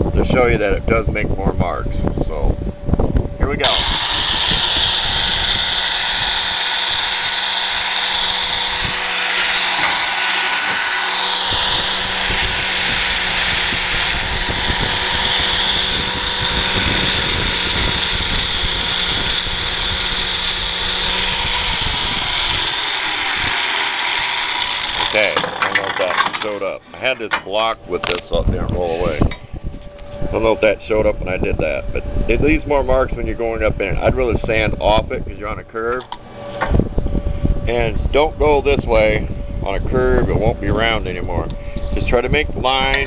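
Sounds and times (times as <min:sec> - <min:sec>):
angle grinder sanding steel: 0:03.6 - 0:29.3.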